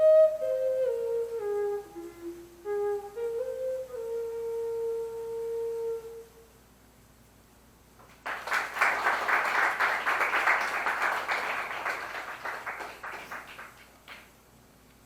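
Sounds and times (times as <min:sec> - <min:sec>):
audience applauding: 0:08.0 - 0:14.3.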